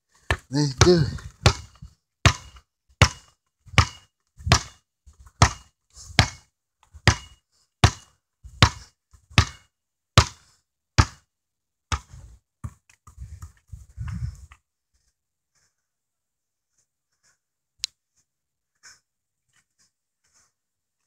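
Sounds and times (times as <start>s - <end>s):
basketball bouncing on hard floor: 0.3s - 4.8s, 5.4s - 5.6s, 9.4s - 9.6s, 11.0s - 11.2s.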